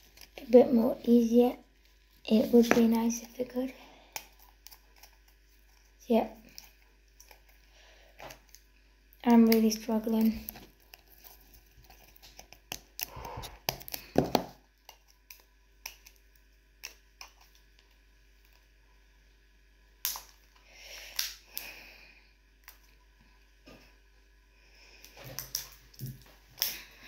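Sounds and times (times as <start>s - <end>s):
soft packaging rustle: 0.0s - 8.8s, 9.5s - 18.8s.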